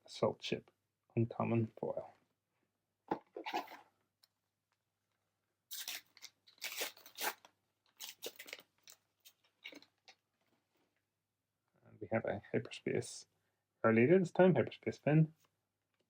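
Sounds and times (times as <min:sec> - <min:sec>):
foil pack tearing and crinkling: 0:05.7 - 0:09.0.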